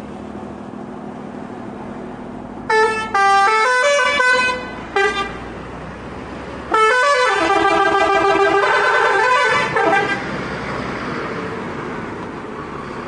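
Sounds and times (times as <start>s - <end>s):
bus horn playing tunes: 2.7s - 5.4s, 6.7s - 10.4s.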